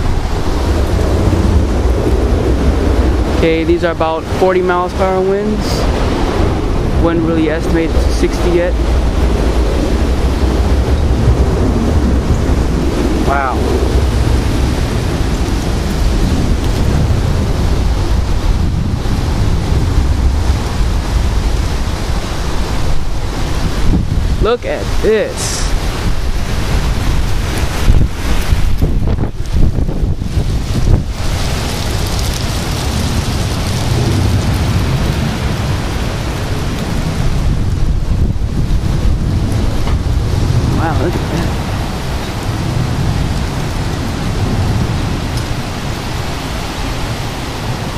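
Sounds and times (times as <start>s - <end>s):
low rumble: 0.0s - 4.4s, 5.5s - 24.4s
strong wind on microphone: 0.0s - 47.9s.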